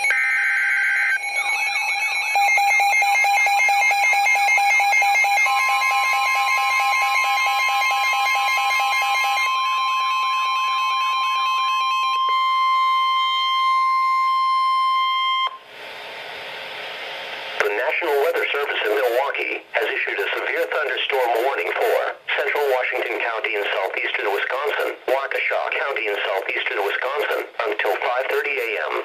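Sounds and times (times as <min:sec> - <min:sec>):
steady warning alarm tone: 0:00.0 - 0:15.6.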